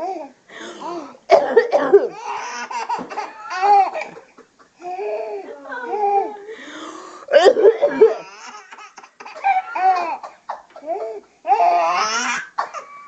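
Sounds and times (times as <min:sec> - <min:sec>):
baby laughing: 0:02.0 - 0:06.4, 0:07.3 - 0:13.0.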